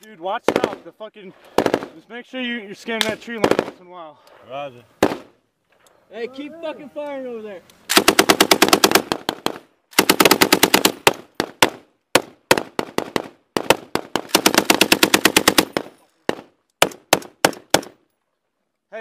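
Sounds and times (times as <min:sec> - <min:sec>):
machine gun firing bursts: 0:07.9 - 0:17.9.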